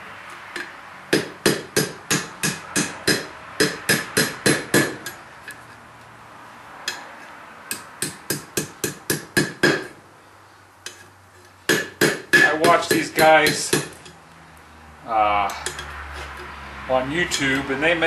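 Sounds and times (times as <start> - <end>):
hammer striking hot steel on anvil: 0.6 - 5.2, 6.9 - 7.1, 7.7 - 10.0, 11.7 - 14.1.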